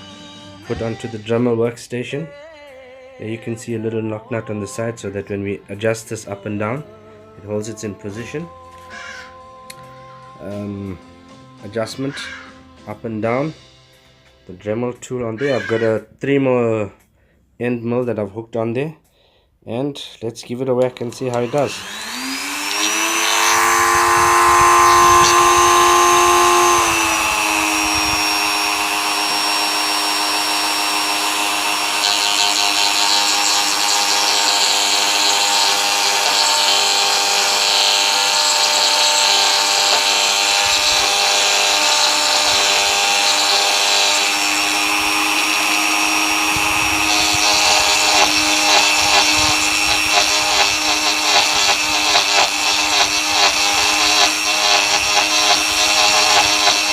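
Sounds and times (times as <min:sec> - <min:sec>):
end mill grinding: 0:20.8 - 0:56.9
rotary tool whine: 0:21.0 - 0:56.9.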